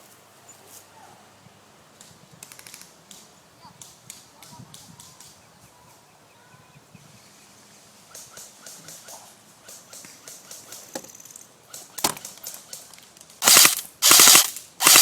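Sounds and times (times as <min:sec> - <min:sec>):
airsoft gunfire: 0:13.4 - 0:15.0.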